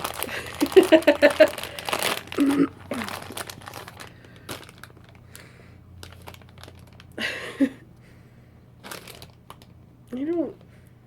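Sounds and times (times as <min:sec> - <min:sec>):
plastic candy packet crinkling: 0:00.0 - 0:07.4, 0:08.8 - 0:10.6.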